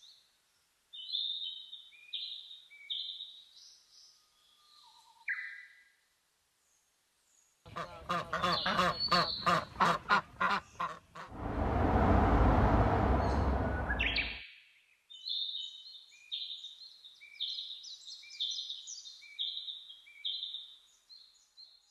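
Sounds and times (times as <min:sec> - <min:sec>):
rush of noise: 0:11.3 - 0:14.4
high bird chirps: 0:13.2 - 0:14.4.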